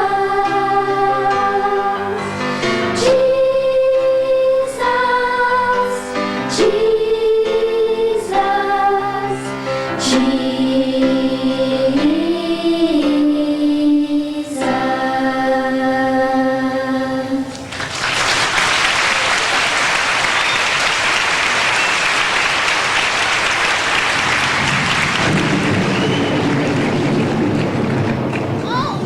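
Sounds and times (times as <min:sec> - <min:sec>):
choir singing a held chord: 0:00.0 - 0:17.6
audience applause: 0:17.6 - 0:29.0.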